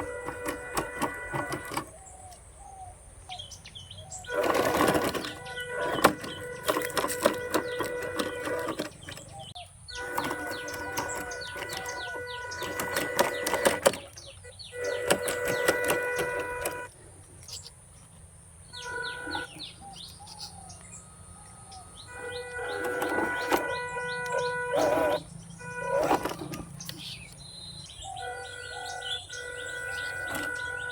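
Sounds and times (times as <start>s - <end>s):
toy truck motor whining: 0.0s - 2.2s, 4.3s - 16.9s, 18.8s - 19.6s, 22.1s - 27.2s, 28.1s - 30.9s
clicking and crackling on track: 0.0s - 2.4s, 4.3s - 16.9s, 22.2s - 27.4s, 28.2s - 30.9s.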